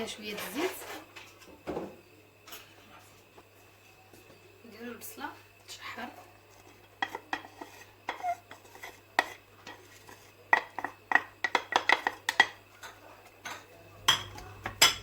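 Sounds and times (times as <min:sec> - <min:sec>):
utensil clinking and scraping a pan: 0:00.1 - 0:01.5, 0:06.0 - 0:15.0.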